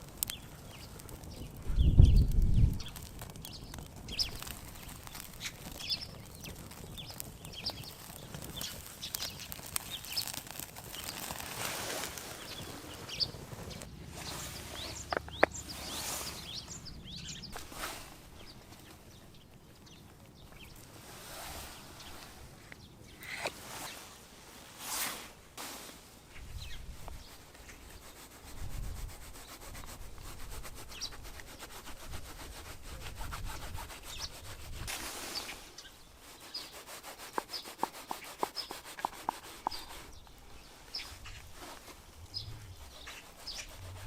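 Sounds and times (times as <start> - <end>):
campfire crackling and popping: 0.0 - 24.0, 36.6 - 44.0
rustling: 2.4 - 44.0.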